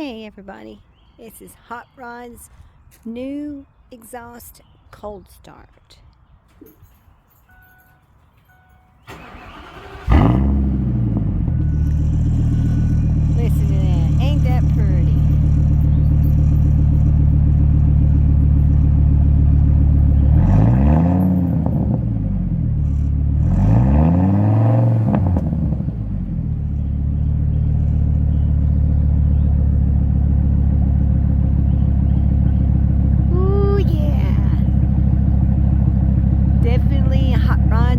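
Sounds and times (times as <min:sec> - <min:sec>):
engine idling and revving: 0:09.1 - 0:37.9.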